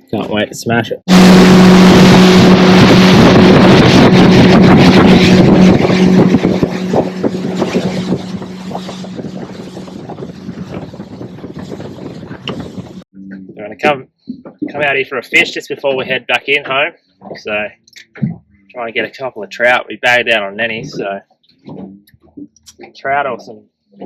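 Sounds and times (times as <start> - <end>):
outboard motor running: 1.1 - 13.0
rushing wind and water: 1.1 - 13.1.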